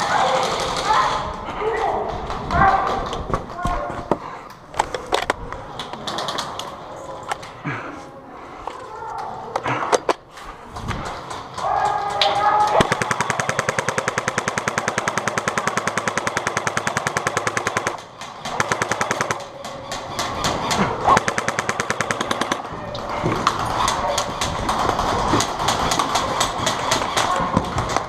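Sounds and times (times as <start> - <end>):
airsoft guns firing: 0.0 - 1.3, 11.2 - 28.0.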